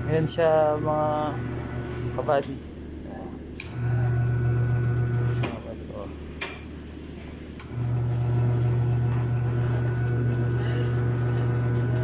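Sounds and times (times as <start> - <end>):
electric motor humming: 0.0 - 2.6, 3.2 - 6.1, 7.6 - 12.0.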